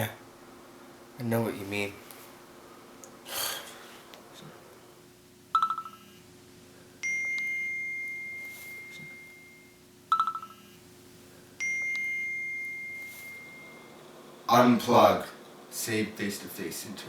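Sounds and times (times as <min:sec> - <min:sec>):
low steady hum: 0:00.0 - 0:17.0
electronic ringing chime tone: 0:07.0 - 0:10.8, 0:11.6 - 0:14.0.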